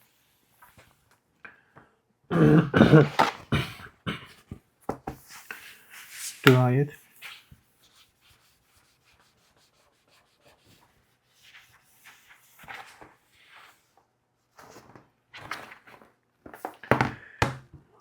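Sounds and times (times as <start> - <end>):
soft rubbing strokes: 5.2 - 13.9.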